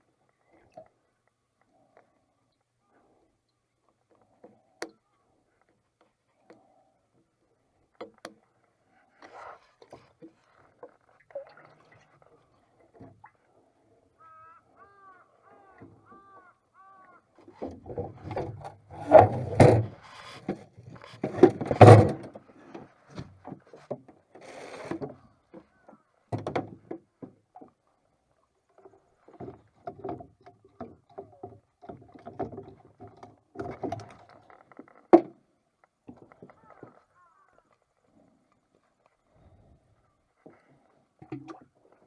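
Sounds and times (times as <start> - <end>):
wooden knocks and clunks: 17.5 - 24.1, 26.3 - 27.4.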